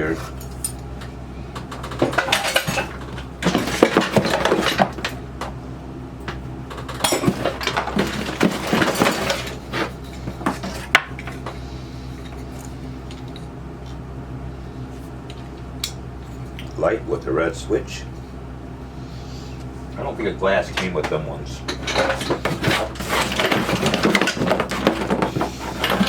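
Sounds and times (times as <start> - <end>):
metal parts clinking and rattling: 0.2 - 0.9, 1.6 - 5.2, 6.7 - 13.5, 21.7 - 26.0.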